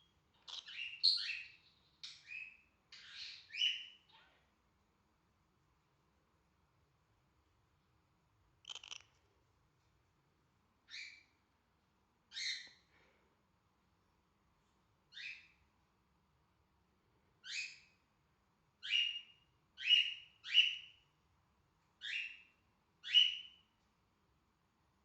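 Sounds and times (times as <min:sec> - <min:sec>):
cockatiel calling: 0:00.4 - 0:04.0, 0:08.6 - 0:09.1, 0:18.8 - 0:20.9, 0:23.0 - 0:23.6.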